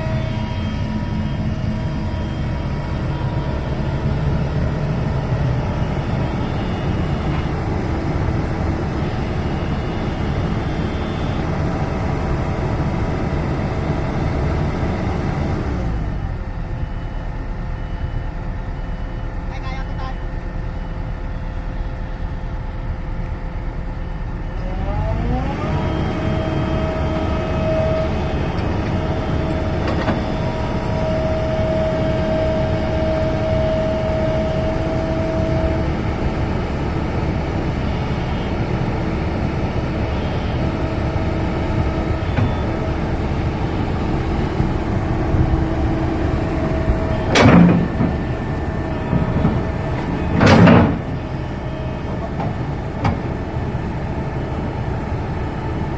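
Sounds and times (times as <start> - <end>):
diesel engine revving: 0.0 - 16.5, 24.5 - 55.9.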